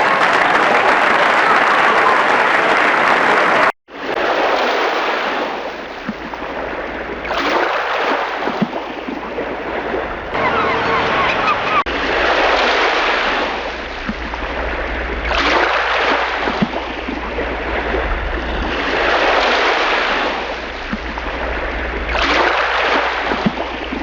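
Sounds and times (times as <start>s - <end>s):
ocean waves: 0.0s - 24.0s.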